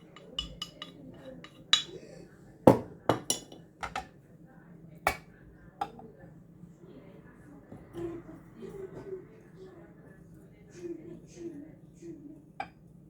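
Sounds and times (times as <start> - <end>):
utensils and containers clinking: 0.0 - 2.0.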